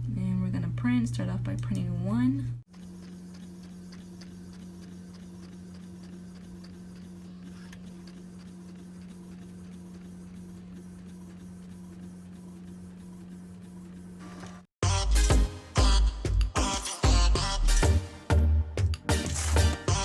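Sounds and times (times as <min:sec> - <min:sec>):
printer humming and ticking: 0:00.0 - 0:14.5.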